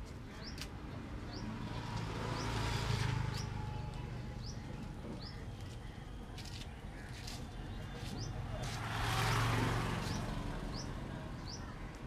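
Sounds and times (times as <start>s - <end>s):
vehicle passing: 1.4s - 5.7s, 7.8s - 11.8s.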